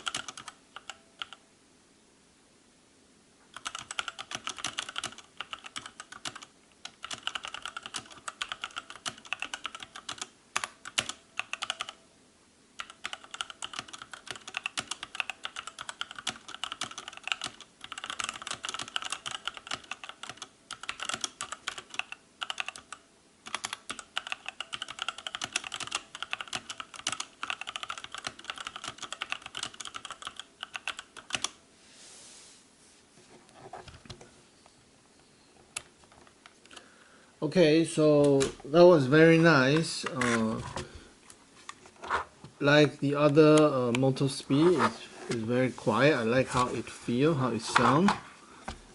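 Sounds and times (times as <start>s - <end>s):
mechanical keyboard typing: 0.0s - 1.4s, 3.6s - 12.0s, 12.8s - 31.6s.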